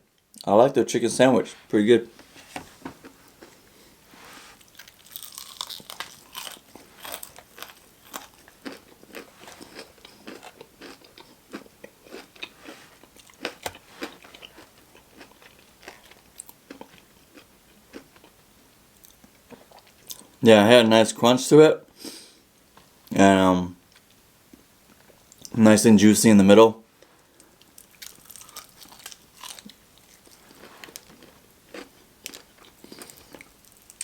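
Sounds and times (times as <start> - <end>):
chewing crunchy fried food: 3.0 - 3.8, 4.6 - 20.4, 27.0 - 34.0.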